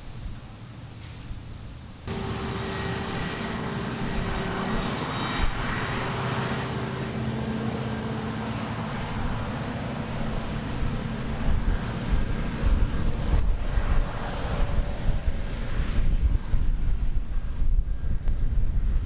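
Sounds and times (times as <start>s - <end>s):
thin high whine: 2.1s - 14.8s
harvest machinery engine drone: 2.1s - 18.3s
low rumble: 2.1s - 19.0s.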